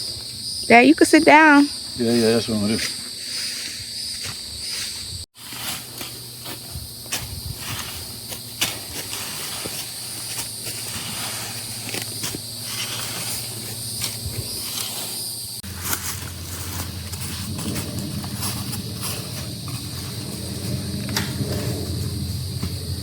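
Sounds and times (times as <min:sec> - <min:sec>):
insects chirring: 0:00.0 - 0:23.0.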